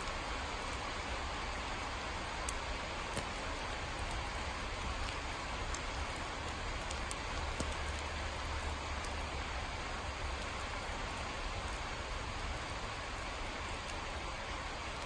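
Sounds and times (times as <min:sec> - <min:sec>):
steady rain: 0:00.0 - 0:15.0
droplet ticks: 0:05.0 - 0:08.0.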